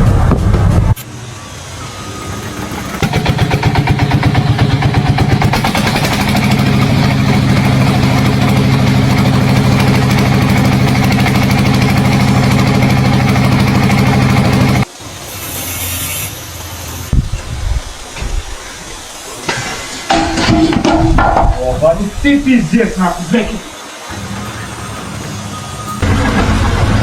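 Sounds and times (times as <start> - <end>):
engine running: 0.0 - 15.2, 23.6 - 27.0.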